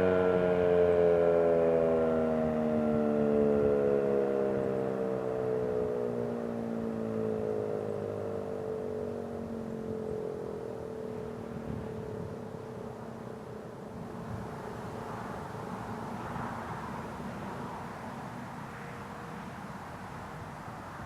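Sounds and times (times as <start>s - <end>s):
warning siren winding down: 0.0s - 13.6s.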